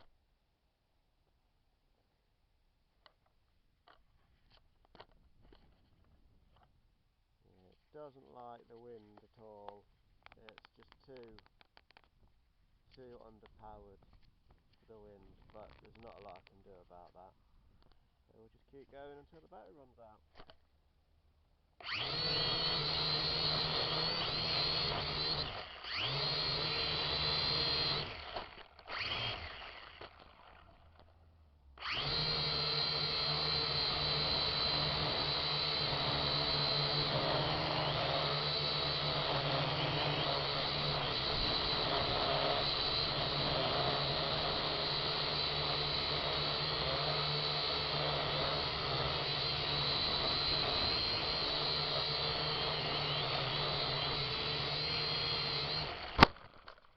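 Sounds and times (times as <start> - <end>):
quadcopter motors whining: 21.8 - 31.0, 31.8 - 56.7.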